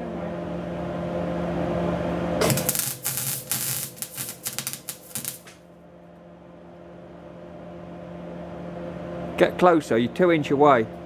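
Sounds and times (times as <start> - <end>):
steady low hum: 0.0 - 11.0
welder arc crackling: 2.4 - 5.6.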